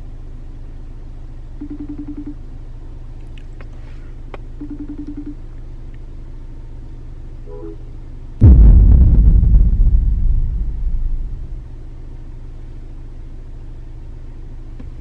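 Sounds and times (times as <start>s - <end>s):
phone ringing tones: 1.6s - 2.4s, 4.6s - 5.4s.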